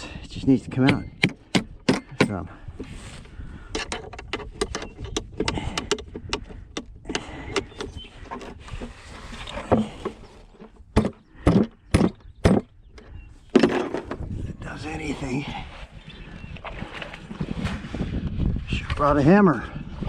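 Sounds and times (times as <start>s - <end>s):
sharp loud metal knocks: 0.8s - 2.4s, 11.0s - 12.7s.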